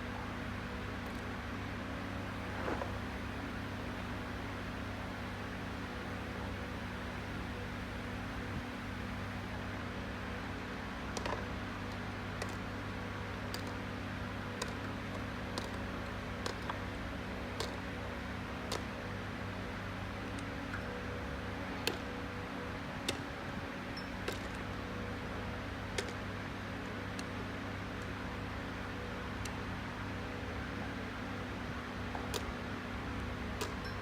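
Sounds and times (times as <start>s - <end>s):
machine hum: 0.0s - 9.5s.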